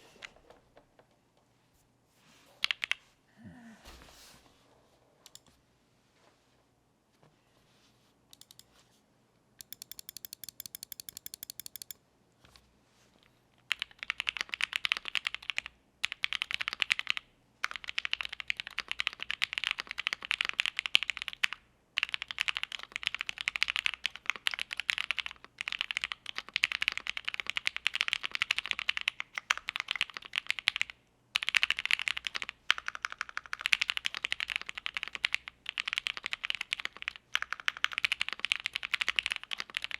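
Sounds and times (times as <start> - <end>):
mechanical keyboard typing: 2.6 - 3.0, 5.3 - 5.5, 8.4 - 8.7, 9.6 - 12.0, 13.7 - 39.9.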